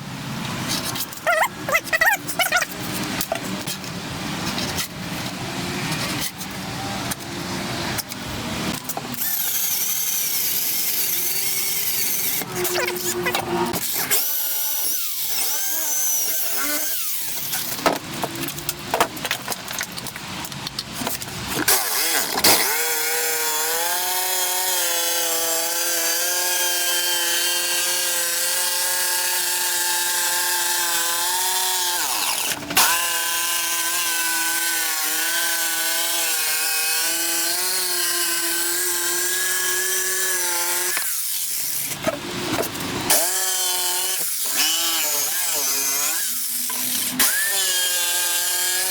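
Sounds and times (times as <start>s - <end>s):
power tool cutting wood: 7.0s - 17.9s, 21.6s - 48.9s.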